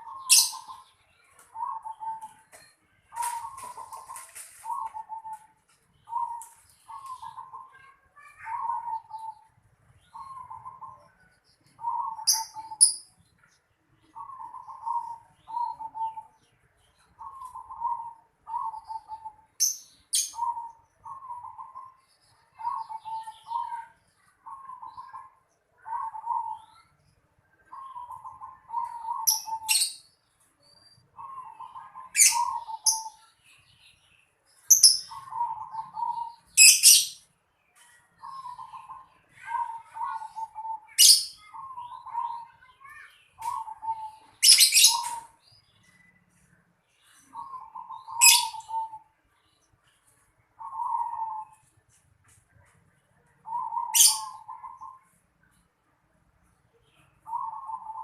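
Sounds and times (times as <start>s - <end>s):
dove cooing: 0.0s - 0.9s, 1.5s - 2.5s, 3.1s - 9.5s, 10.1s - 11.2s, 11.8s - 12.9s, 14.2s - 16.4s, 17.2s - 19.5s, 20.2s - 26.8s, 27.7s - 29.9s, 31.2s - 33.2s, 34.7s - 37.0s, 38.2s - 42.6s, 43.4s - 45.4s, 47.3s - 49.1s, 50.6s - 51.6s, 53.4s - 55.0s, 57.2s - 58.0s
sharp high bird chirps: 11.7s - 13.2s, 27.8s - 33.3s, 34.6s - 37.3s, 38.3s - 46.2s, 47.2s - 49.1s, 53.5s - 55.1s.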